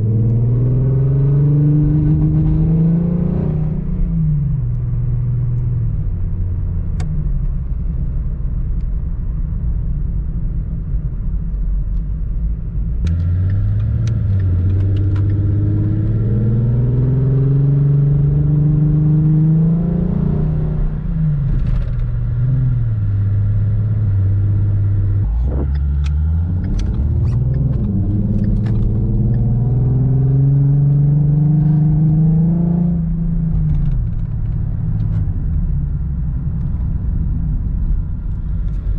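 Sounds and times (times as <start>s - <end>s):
car engine accelerating: 0.0s - 8.1s, 12.9s - 38.9s.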